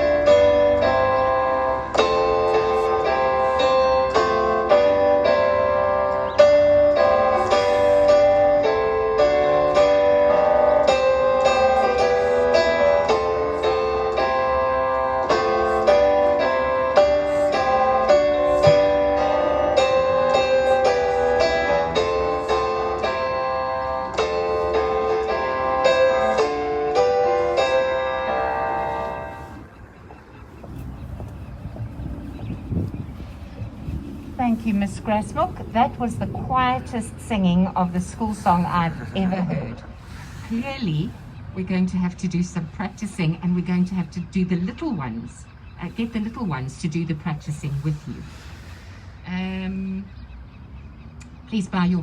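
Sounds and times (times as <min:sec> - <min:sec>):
piano playing chords: 0:00.0 - 0:41.5.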